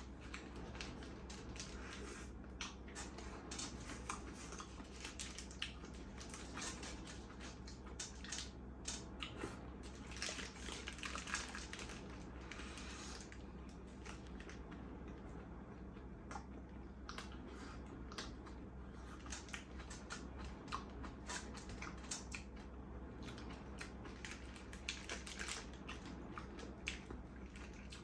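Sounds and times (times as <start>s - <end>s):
low room hum: 0.0s - 28.0s.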